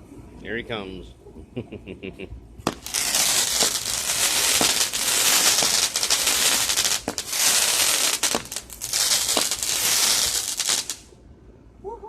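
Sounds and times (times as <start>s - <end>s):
firework pops: 2.6s - 11.1s
firework crackling hiss: 2.7s - 11.1s.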